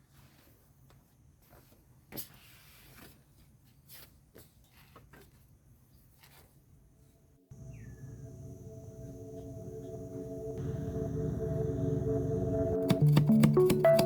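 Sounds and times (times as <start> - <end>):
faint low hum: 7.5 - 13.1.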